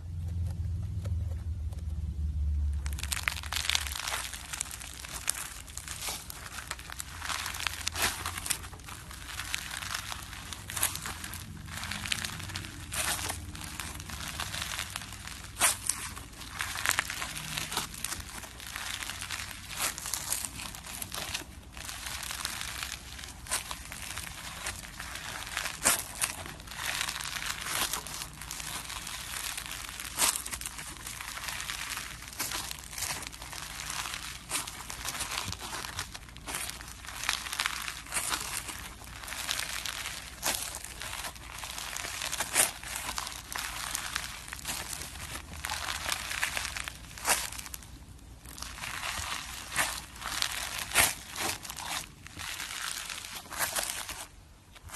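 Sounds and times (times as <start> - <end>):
slime crackling and popping: 0.5 - 54.9.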